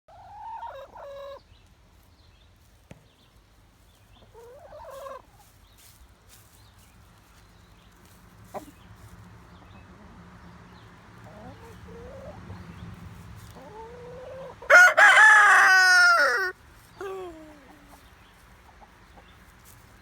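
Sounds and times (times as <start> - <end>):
rooster crowing: 14.6 - 17.3.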